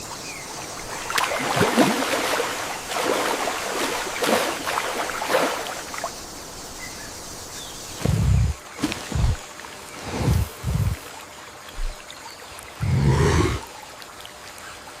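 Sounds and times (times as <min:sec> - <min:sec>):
running water: 0:00.0 - 0:15.0
water splashing: 0:00.8 - 0:06.2.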